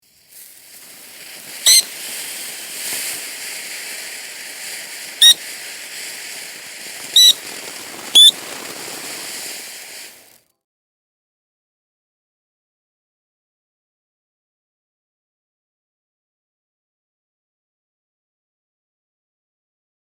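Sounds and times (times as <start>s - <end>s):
shrill firework whistles: 0.0s - 10.4s
firework fountain crackling hiss: 0.0s - 10.5s.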